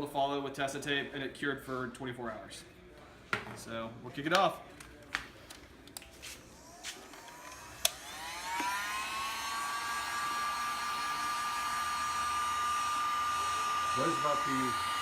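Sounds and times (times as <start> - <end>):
heat gun fan whine: 6.4 - 15.0
heat gun click: 7.2 - 8.8.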